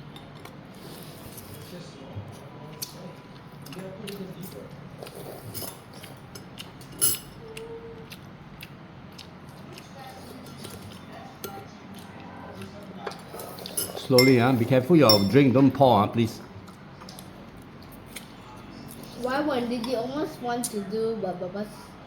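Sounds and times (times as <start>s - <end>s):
faint background talk: 0.8s - 14.6s, 16.4s - 22.0s
cutlery clinking against dishes: 5.4s - 7.4s, 13.0s - 15.5s.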